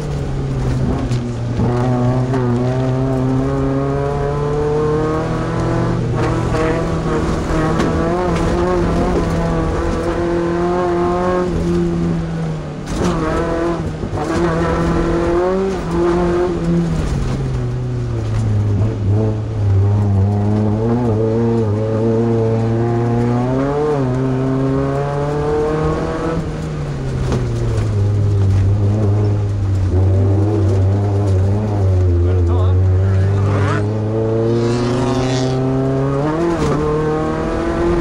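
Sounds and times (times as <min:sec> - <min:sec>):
race truck engine revving: 0:18.2 - 0:38.0.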